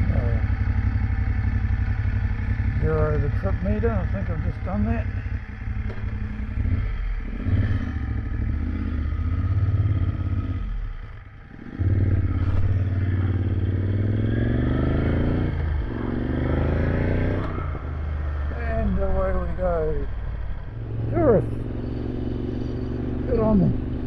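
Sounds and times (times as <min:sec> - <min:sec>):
gear change: 0:00.0 - 0:24.0
motorcycle engine accelerating: 0:00.0 - 0:24.0.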